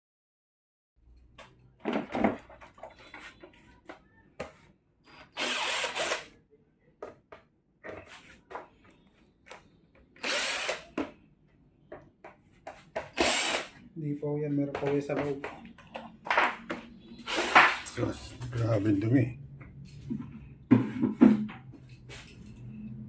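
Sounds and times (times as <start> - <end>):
power drill unscrewing screws: 5.3 - 6.3, 10.2 - 10.8.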